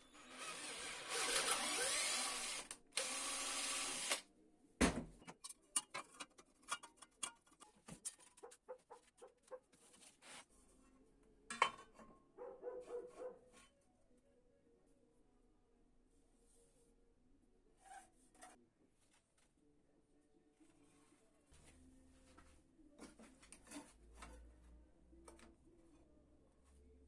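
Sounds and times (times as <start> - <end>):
belt grinder grinding metal: 0.1 - 4.2
thump: 4.8 - 5.2.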